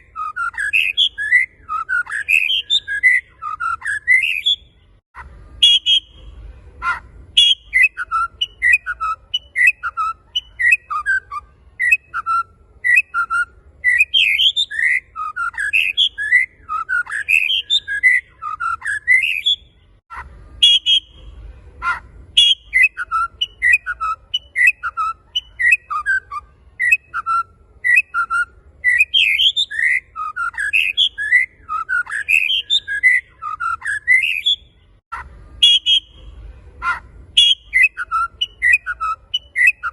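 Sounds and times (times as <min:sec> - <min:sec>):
songbird whistling song: 0:00.0 - 0:39.9.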